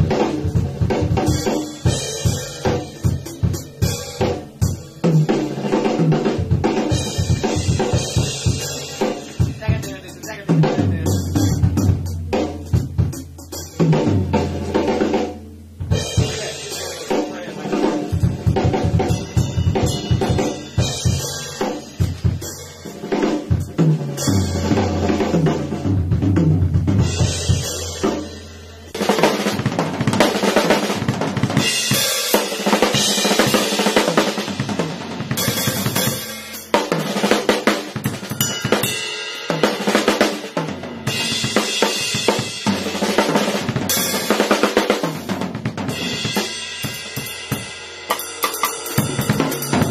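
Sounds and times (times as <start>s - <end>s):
drum kit solo: 0.0s - 49.9s
cymbals ringing: 38.3s - 39.6s, 46.6s - 49.9s.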